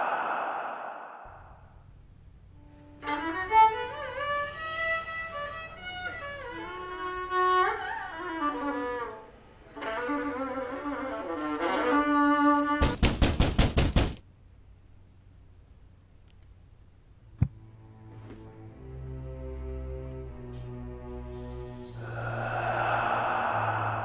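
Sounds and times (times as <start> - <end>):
steady low hum: 0.0 - 7.6, 14.2 - 24.0
solo violin melody: 2.8 - 12.8.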